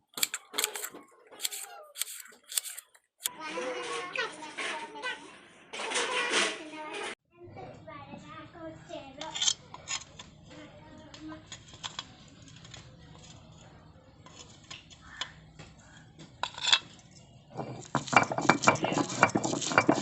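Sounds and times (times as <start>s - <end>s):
metal kitchen utensils clinking: 16.4s - 20.0s.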